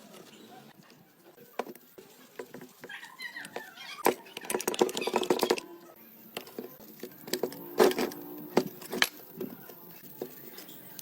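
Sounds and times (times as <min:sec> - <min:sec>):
metal parts clinking: 0:06.4 - 0:09.5.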